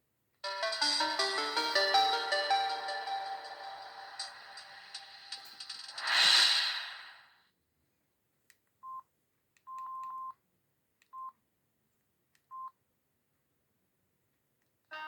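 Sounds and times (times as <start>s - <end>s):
phone ringtone: 0.4s - 5.0s
phone keypad beeps: 9.7s - 10.3s.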